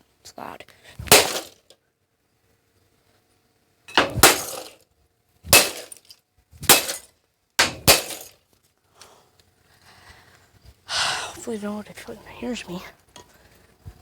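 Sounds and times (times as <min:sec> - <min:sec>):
stick smashing plastic device: 0:01.1 - 0:01.6, 0:04.0 - 0:04.8, 0:05.5 - 0:08.4.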